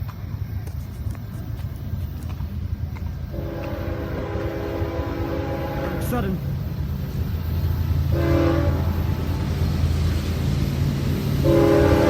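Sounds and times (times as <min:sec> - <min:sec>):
steady low rumble: 0:00.0 - 0:12.0
multi-chime train horn: 0:03.4 - 0:06.4, 0:08.1 - 0:09.4, 0:11.4 - 0:12.0.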